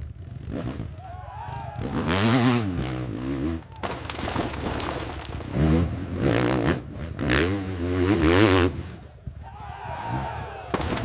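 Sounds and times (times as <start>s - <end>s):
motorcycle engine revving hard: 5.6s - 8.9s.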